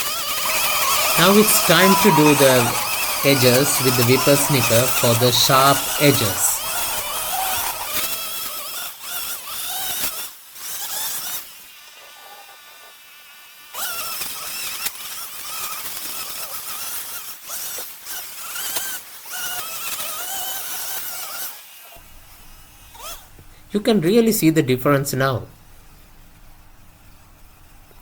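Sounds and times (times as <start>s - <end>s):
string trimmer buzzing: 0.0s - 11.7s, 13.8s - 23.8s.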